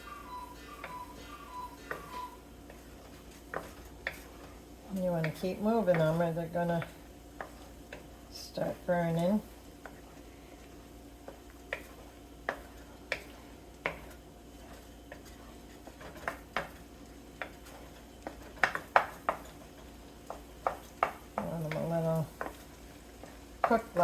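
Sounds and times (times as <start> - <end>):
utensil scraping eggs in a pan: 0.8 - 24.0.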